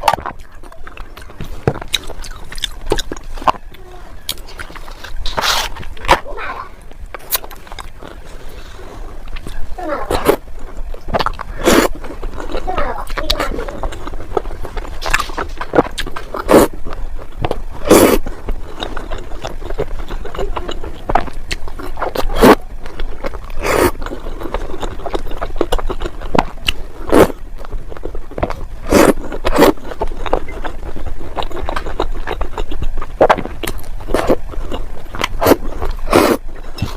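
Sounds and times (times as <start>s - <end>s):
eating crunches and clicks: 0.0s - 8.4s, 9.2s - 36.9s.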